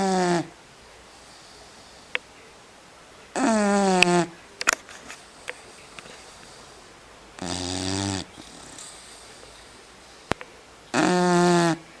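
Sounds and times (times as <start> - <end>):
person snoring: 0.0 - 0.5, 7.4 - 10.3.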